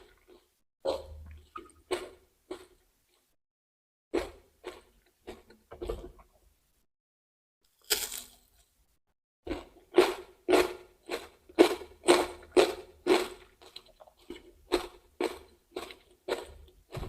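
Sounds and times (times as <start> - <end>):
crunchy chewing of vegetables: 0.0 - 3.3, 4.2 - 5.6, 7.7 - 8.8, 9.5 - 17.0.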